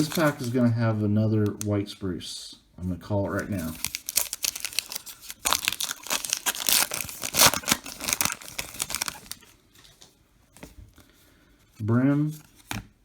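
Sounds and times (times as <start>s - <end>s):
wrapper tearing and crinkling: 0.0s - 0.7s, 3.4s - 9.5s.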